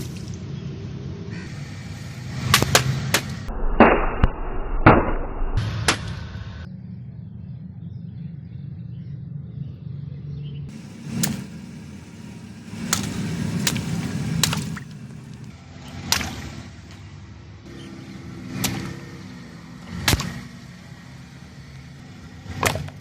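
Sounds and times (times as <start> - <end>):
car engine running: 10.7 - 15.6.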